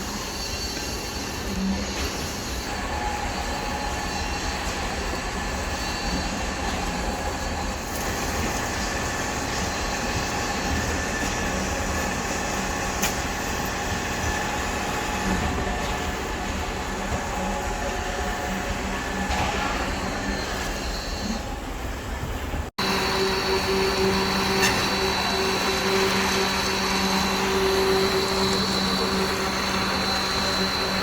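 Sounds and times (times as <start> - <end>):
concrete pump machine din: 0.0 - 21.9, 22.8 - 31.0
high whining tones: 22.8 - 31.0.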